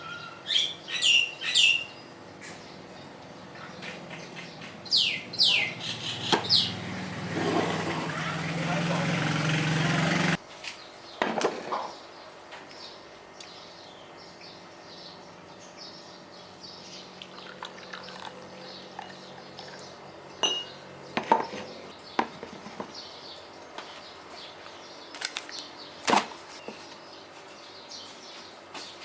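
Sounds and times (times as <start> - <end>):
dishes and utensils clinking: 20.4 - 20.8.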